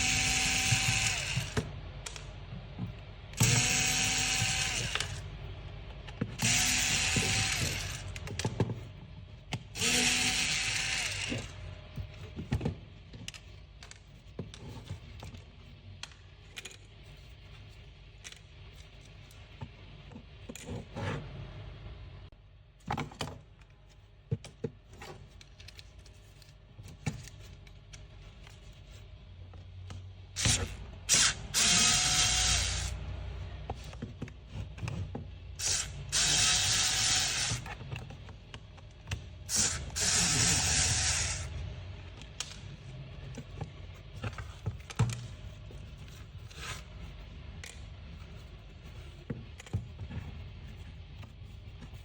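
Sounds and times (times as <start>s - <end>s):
small power tool running: 0.0s - 1.6s, 3.4s - 5.2s, 6.4s - 8.1s, 9.8s - 11.5s, 30.4s - 33.0s, 35.6s - 37.6s, 39.5s - 41.5s.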